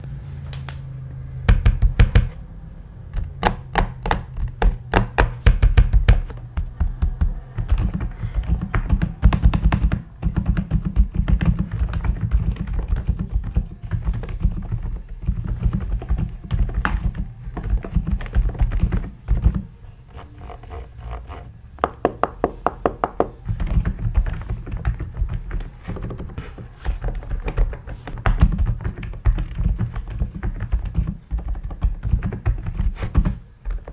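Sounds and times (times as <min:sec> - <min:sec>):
mechanical keyboard typing: 0:03.2 - 0:19.7.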